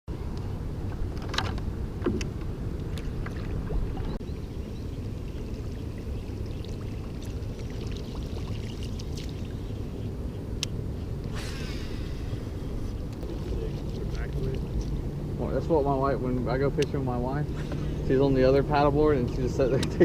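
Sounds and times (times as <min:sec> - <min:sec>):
water lapping against boat: 0:02.0 - 0:10.1.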